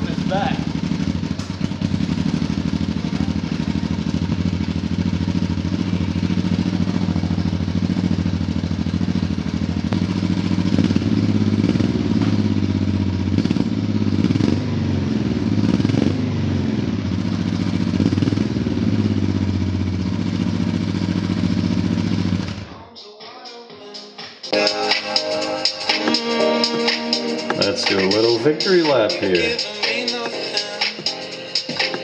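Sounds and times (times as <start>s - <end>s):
motorcycle throttle blips: 0.0s - 22.7s
motorcycle engine idling: 0.0s - 22.9s, 24.6s - 32.0s.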